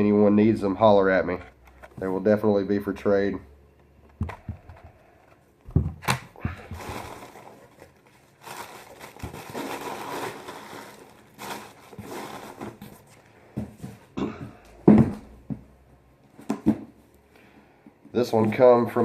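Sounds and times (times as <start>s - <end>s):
packaging rustling and crinkling: 6.0s - 13.4s.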